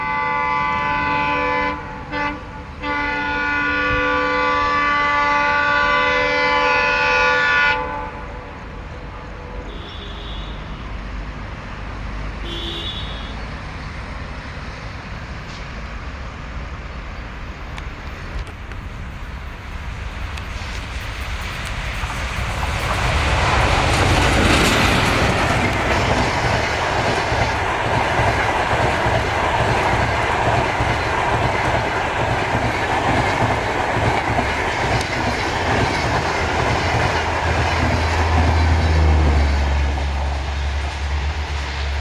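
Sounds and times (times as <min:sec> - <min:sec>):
locomotive horn blast: 0:00.0 - 0:08.6, 0:09.6 - 0:11.0, 0:12.4 - 0:13.5
train running past rumble: 0:00.0 - 0:42.0.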